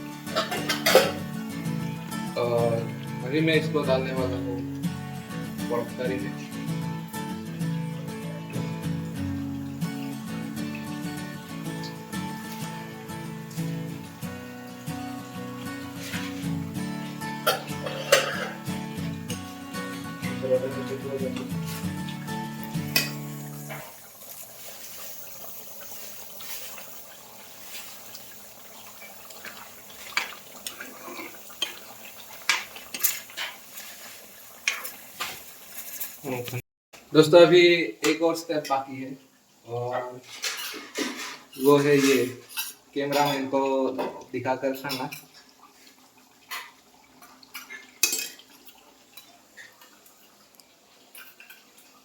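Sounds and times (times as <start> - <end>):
curry hissing in a pot: 0.0 - 52.0
dishes and cutlery clinking: 0.3 - 1.3, 17.4 - 18.7, 22.8 - 24.0, 32.4 - 33.8, 40.2 - 44.2, 47.5 - 50.3, 51.1 - 51.7.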